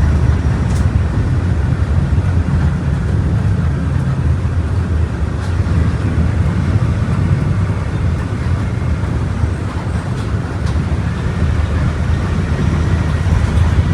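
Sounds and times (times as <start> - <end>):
bus engine droning: 0.0 - 13.9
road noise: 0.0 - 13.9.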